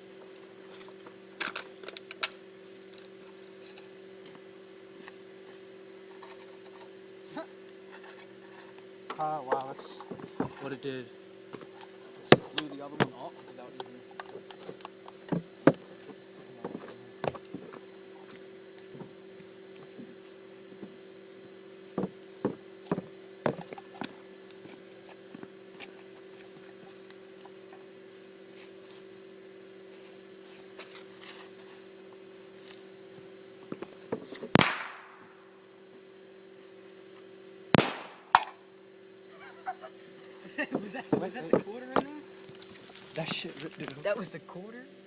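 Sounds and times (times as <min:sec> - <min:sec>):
steady low hum: 0:00.0 - 0:45.0
sharp loud burst: 0:34.6 - 0:35.2, 0:37.8 - 0:38.4.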